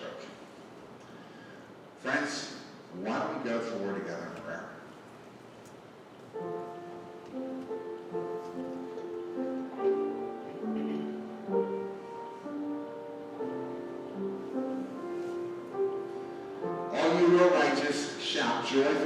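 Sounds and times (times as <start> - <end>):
soft piano music: 6.0 - 19.0.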